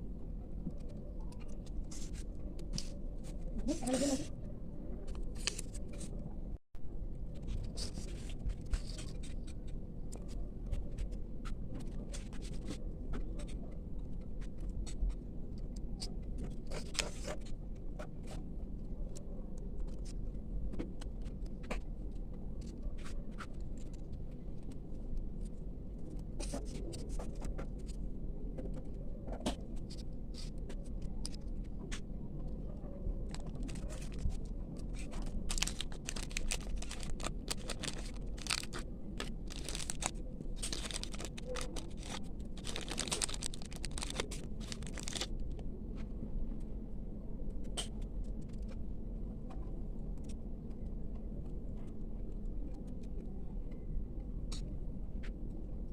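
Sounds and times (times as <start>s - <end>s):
low background hum: 0.0s - 55.9s
paper and plastic packaging rustling: 33.2s - 45.6s.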